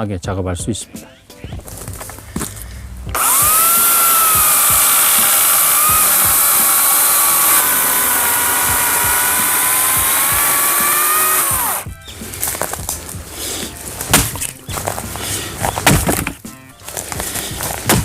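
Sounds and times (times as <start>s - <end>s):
electric power tool motor whine: 3.1s - 11.9s.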